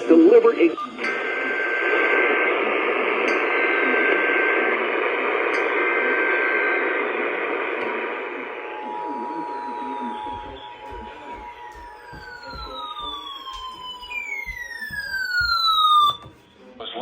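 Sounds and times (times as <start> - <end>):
steady two-tone beep: 0.0 - 4.7, 8.5 - 16.2
radio static hiss: 0.0 - 13.4.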